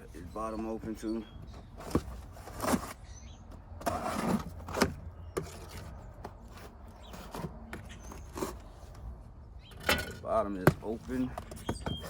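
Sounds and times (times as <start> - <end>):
cardboard scraping: 1.4 - 3.0, 3.7 - 8.9.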